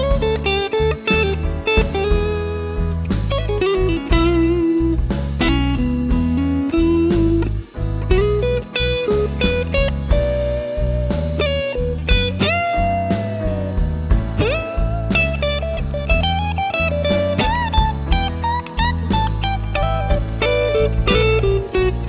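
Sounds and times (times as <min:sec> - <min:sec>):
drums and bass backing track: 0:00.0 - 0:22.0
electric guitar blues lead: 0:00.0 - 0:22.0.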